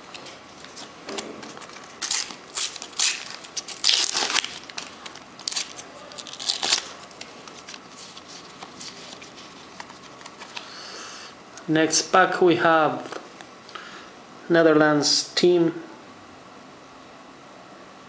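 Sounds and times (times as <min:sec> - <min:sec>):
wrapper crinkling: 0:00.1 - 0:10.7
sticker packet being torn open: 0:01.4 - 0:10.6.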